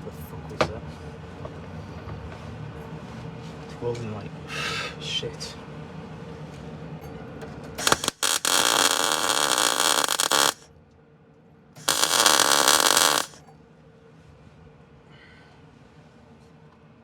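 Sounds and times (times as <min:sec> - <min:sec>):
welder arc crackling: 0:07.8 - 0:10.7, 0:11.8 - 0:13.4.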